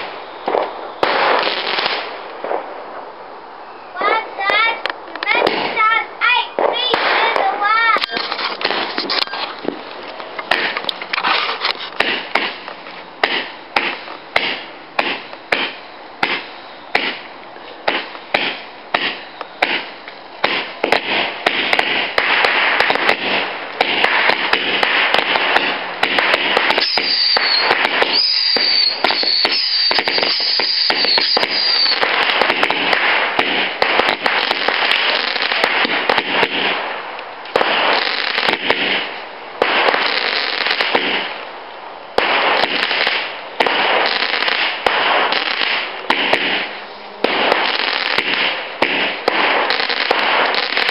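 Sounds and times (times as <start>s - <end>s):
fireworks bangs: 0.0s - 50.9s
fireworks crackling: 0.0s - 50.9s
high wavering whistle: 26.8s - 32.0s.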